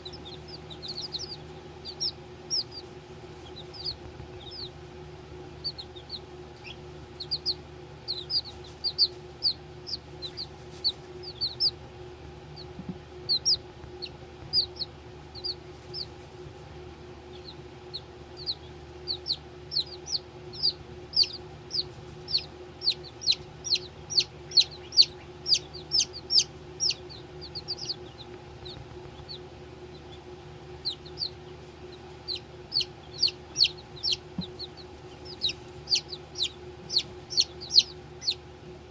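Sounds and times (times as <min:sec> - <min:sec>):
baby chicks peeping: 0:00.0 - 0:38.9
steady low hum: 0:00.0 - 0:38.9.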